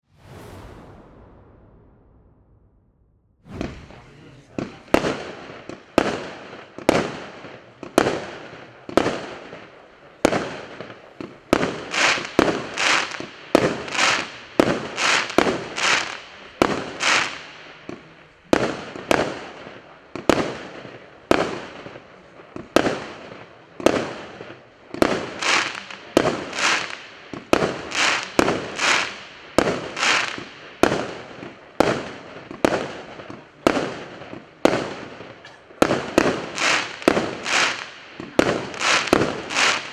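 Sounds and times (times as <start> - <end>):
firework bangs with hiss: 0.0 - 2.6, 3.4 - 39.9.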